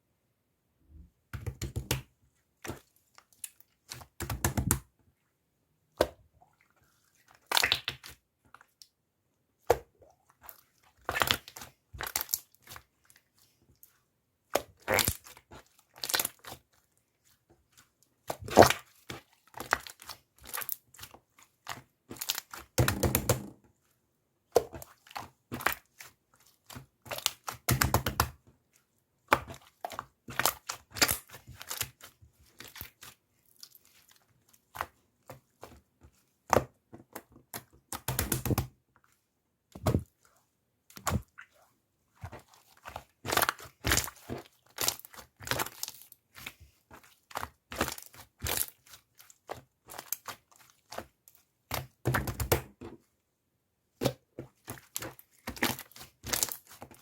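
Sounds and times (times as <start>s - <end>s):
close-up crunching and crinkling: 14.6s - 23.6s, 28.8s - 39.2s, 39.8s - 52.8s, 54.0s - 57.0s.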